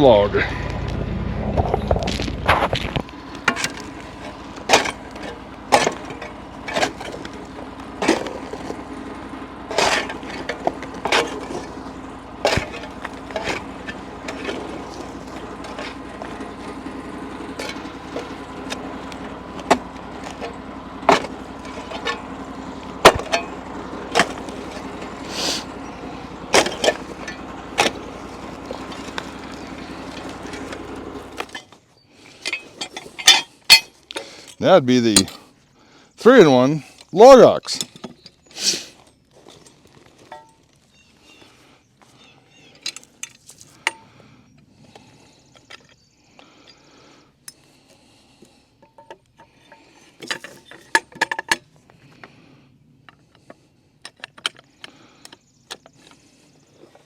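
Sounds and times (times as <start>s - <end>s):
sawmill engine idling: 0.0s - 38.1s.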